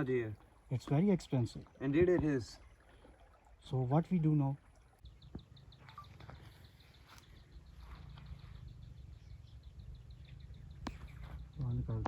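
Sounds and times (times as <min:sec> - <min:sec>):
low steady rumble: 0:06.5 - 0:12.0.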